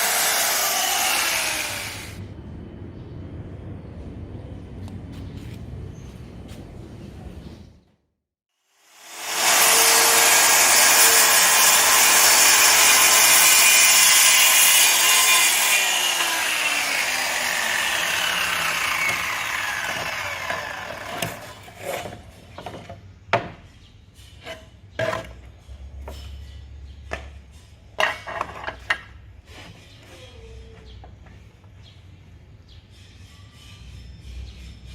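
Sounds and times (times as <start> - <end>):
power tool motor: 0.0 - 2.2, 8.8 - 21.5.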